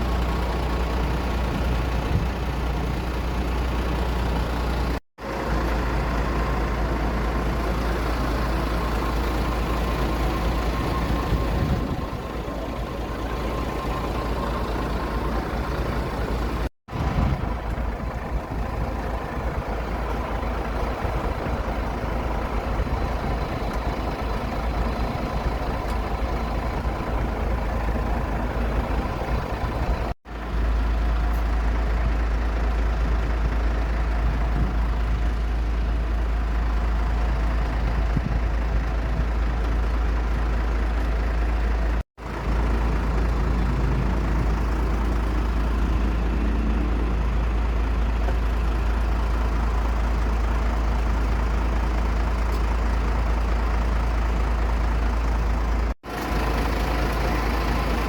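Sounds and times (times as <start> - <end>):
aircraft engines droning: 0.0 - 30.2, 42.4 - 50.0.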